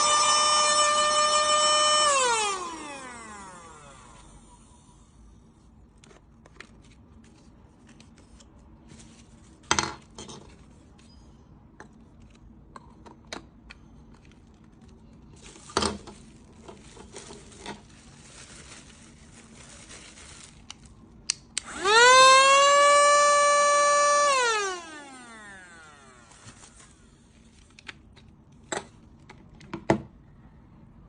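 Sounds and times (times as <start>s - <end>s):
vacuum motor whine: 0.0s - 5.1s, 21.6s - 27.3s.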